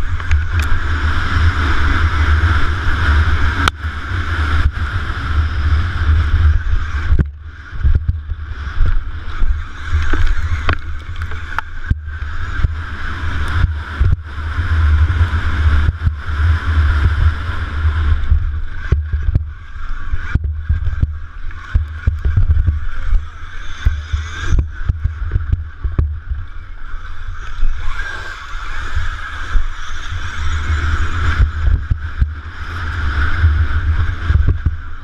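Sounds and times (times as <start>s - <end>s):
electric motor whine: 0.0s - 35.0s
wind buffeting on microphone: 0.0s - 35.0s
sharp clicks and knocks: 10.0s - 12.0s.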